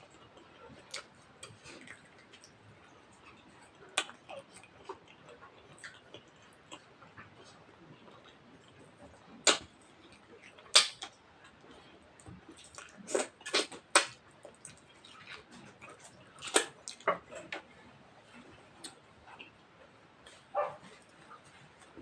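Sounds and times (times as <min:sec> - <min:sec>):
mouth chewing with smacks: 0:00.0 - 0:19.6.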